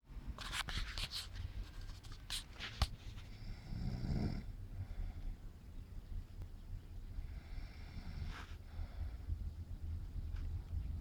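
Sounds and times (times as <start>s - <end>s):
steady low hum: 0.1s - 11.0s
man snoring: 3.5s - 4.5s.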